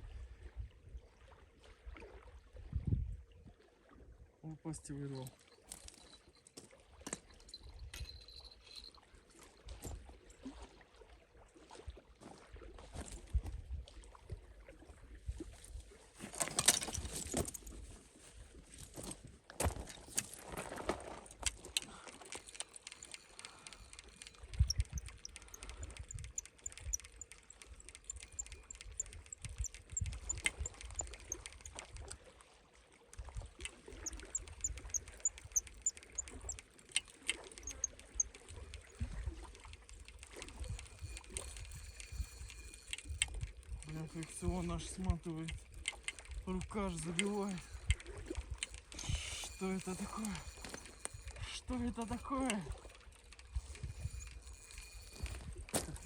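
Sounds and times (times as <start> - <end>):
wind buffeting microphone: 2.6 - 3.4, 22.4 - 32.2, 37.6 - 51.6, 52.7 - 56.0
handling clicks and rustles: 5.2 - 10.0, 16.1 - 32.2, 33.5 - 56.0.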